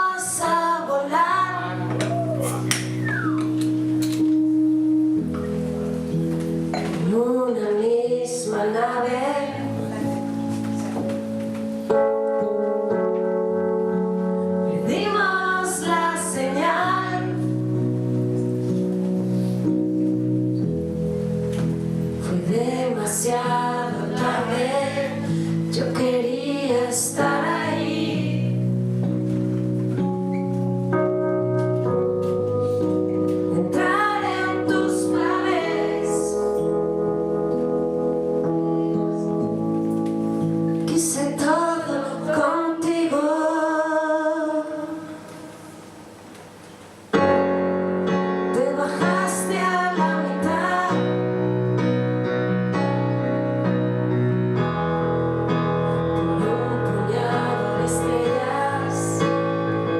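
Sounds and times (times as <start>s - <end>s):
woman singing: 0.0s - 2.3s, 6.8s - 10.4s, 14.7s - 17.7s, 22.2s - 28.6s, 33.5s - 36.5s, 40.8s - 45.2s, 48.5s - 51.3s, 56.2s - 59.3s
keyboard chords: 0.0s - 59.9s
live band playing slow song: 9.5s - 22.6s, 27.4s - 41.2s.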